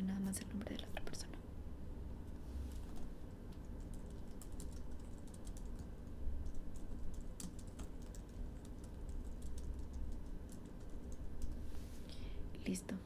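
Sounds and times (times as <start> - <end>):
keyboard typing: 3.5 - 11.6.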